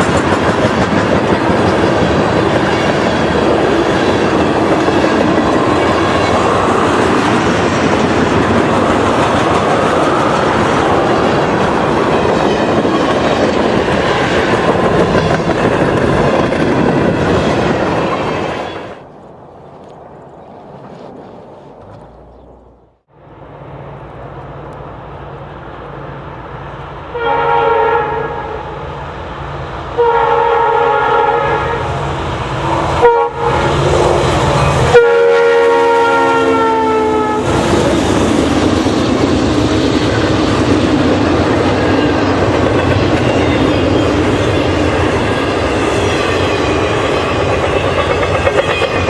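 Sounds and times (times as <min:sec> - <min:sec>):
train wheels on rails: 0:00.0 - 0:22.5, 0:31.5 - 0:49.0
locomotive engine hum: 0:00.0 - 0:27.2
locomotive horn: 0:27.1 - 0:29.0, 0:30.0 - 0:32.0, 0:32.9 - 0:37.8.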